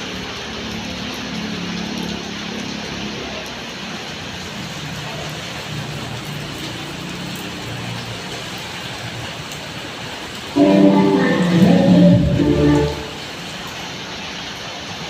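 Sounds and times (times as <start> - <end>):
steady rainfall: 0.0 - 15.0
music: 10.6 - 13.2.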